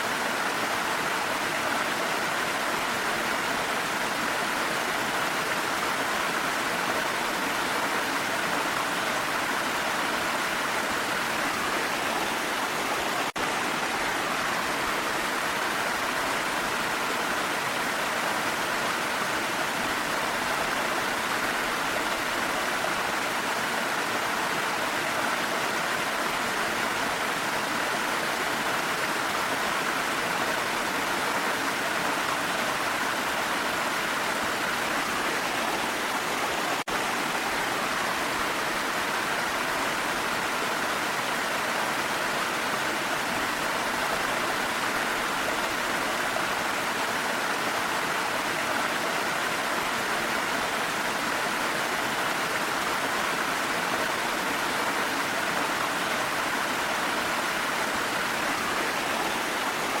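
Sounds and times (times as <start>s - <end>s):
waterfall rushing: 0.0s - 60.0s.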